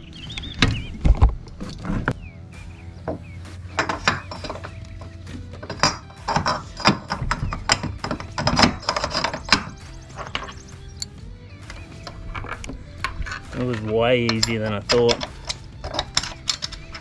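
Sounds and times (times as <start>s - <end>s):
steady low hum: 0.0s - 17.0s
metallic clicks and knocks: 3.8s - 17.0s.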